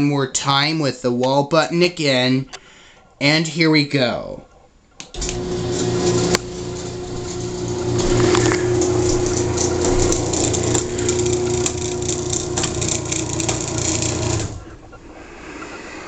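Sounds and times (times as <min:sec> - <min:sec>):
rattling clicks from drive: 0:05.1 - 0:14.6
garage door opener motor hum: 0:05.1 - 0:14.9.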